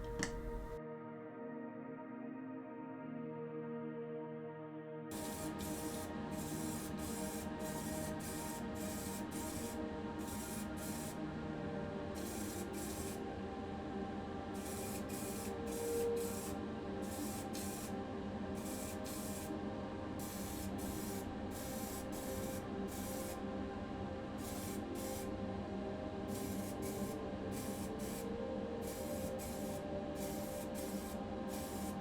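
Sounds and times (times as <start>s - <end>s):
aerosol can spraying: 5.1s - 11.2s, 12.2s - 13.2s, 14.6s - 17.9s, 18.6s - 19.5s, 20.2s - 23.4s, 24.4s - 25.3s, 26.3s - 32.0s.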